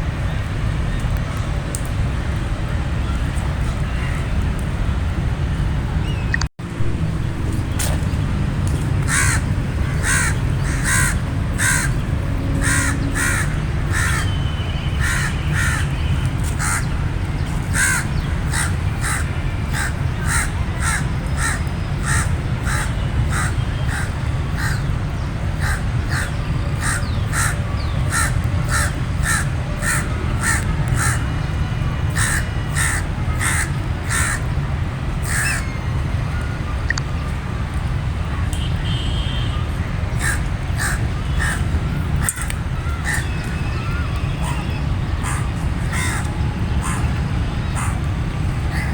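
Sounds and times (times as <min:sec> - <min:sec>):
steady low rumble: 0:00.0 - 0:15.4
crows cawing: 0:09.1 - 0:14.4, 0:15.0 - 0:15.9, 0:16.6 - 0:16.9, 0:17.7 - 0:24.9, 0:25.6 - 0:31.2, 0:32.2 - 0:34.4, 0:35.2 - 0:35.7, 0:40.2 - 0:41.7, 0:45.2 - 0:47.1.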